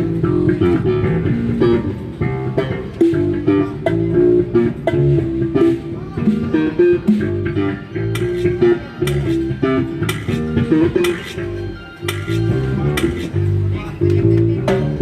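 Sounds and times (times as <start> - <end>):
bass guitar: 0.0 - 15.0
plucked string lead melody: 0.0 - 15.0
drum hits: 10.0 - 11.3.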